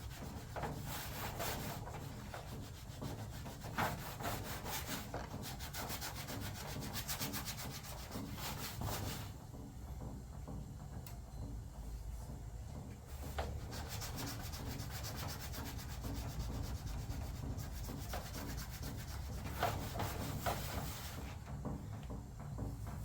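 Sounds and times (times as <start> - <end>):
sanding metal panel: 0.0 - 9.4, 13.1 - 21.4.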